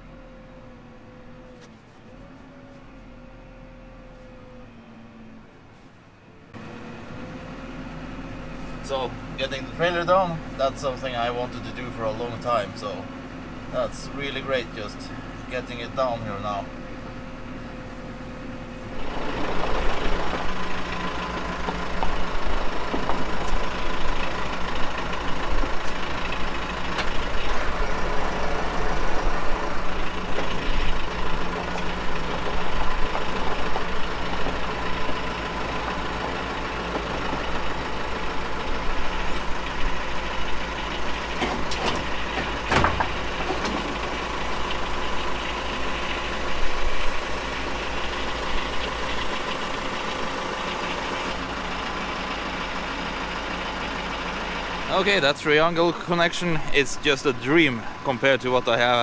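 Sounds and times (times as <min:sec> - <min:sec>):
tractor engine running: 0:06.5 - 0:59.0
sharp clunk: 0:41.4 - 0:44.0.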